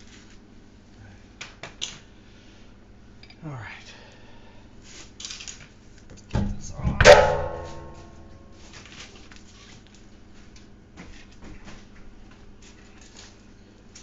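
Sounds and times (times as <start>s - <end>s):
sharp metallic clank: 6.4s - 8.5s.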